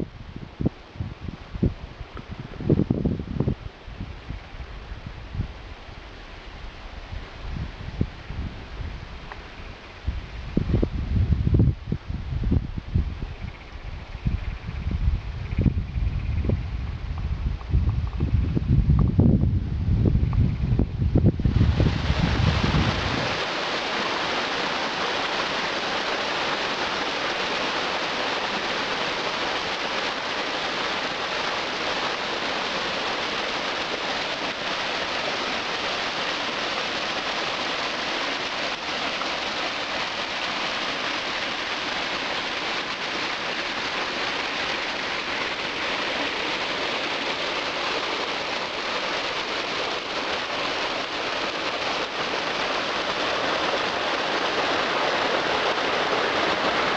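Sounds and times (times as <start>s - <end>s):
stream water rushing: 21.0s - 56.9s.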